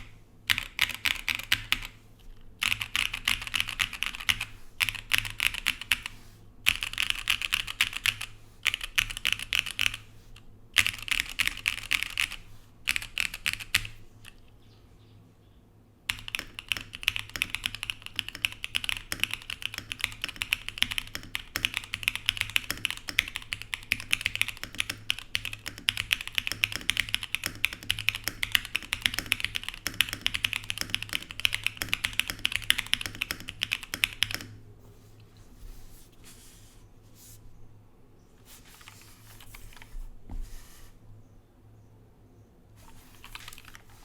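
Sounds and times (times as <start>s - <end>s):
fast mechanical keyboard typing: 0.0s - 2.0s, 2.6s - 10.1s, 10.8s - 14.4s, 16.1s - 34.6s, 42.8s - 44.0s.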